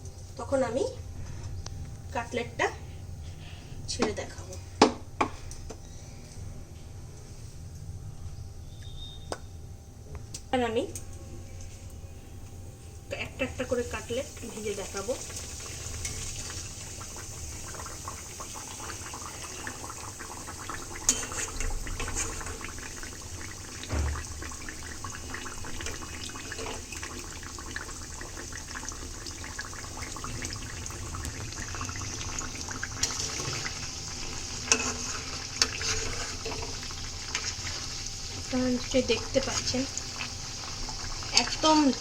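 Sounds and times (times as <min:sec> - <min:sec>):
cutlets sizzling in hot oil: 0:11.5 - 0:42.0.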